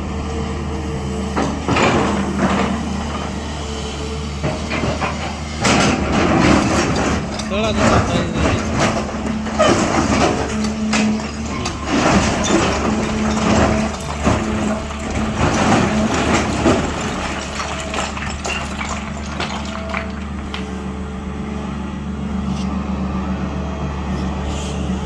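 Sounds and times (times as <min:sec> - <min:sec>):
excavator diesel engine running: 0:00.0 - 0:25.0
metal clanks and scrapes: 0:01.4 - 0:03.4, 0:04.2 - 0:20.8, 0:22.3 - 0:22.9, 0:24.1 - 0:25.0
faint hydraulic whine: 0:20.6 - 0:25.0.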